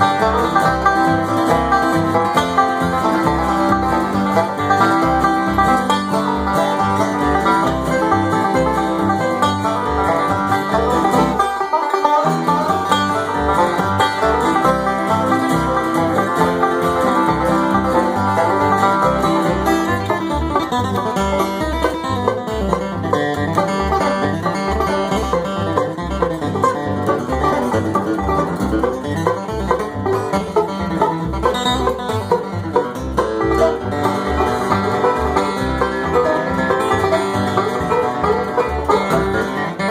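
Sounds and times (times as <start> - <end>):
bluegrass banjo picking: 0.0 - 39.9
guitar: 0.0 - 39.9.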